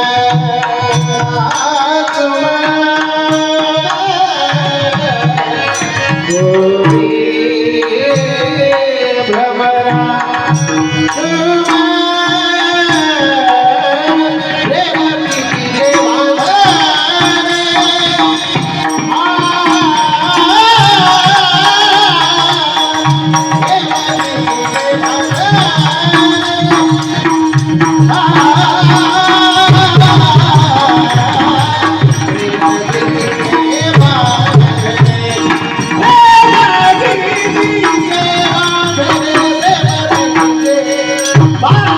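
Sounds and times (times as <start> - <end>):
man singing devotional melody: 0.0 - 41.9
hand drum: 14.7 - 41.9.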